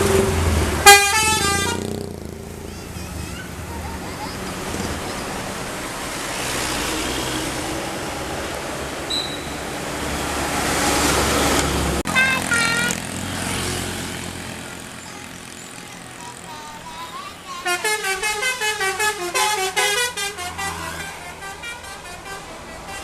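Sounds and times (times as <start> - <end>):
bus engine and tyre noise: 0.0 - 23.0
musical air horn: 0.8 - 2.0, 12.1 - 13.9, 17.6 - 23.0.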